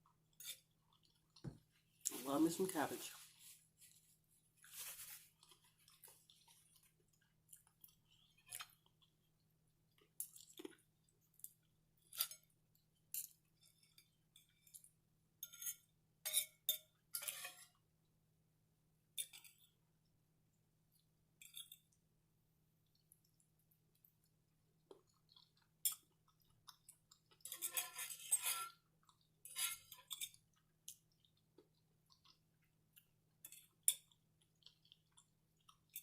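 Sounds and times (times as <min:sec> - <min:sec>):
quiet chewing and mouth clicks: 0:00.0 - 0:02.1, 0:05.4 - 0:15.0, 0:19.1 - 0:27.7, 0:28.7 - 0:36.0.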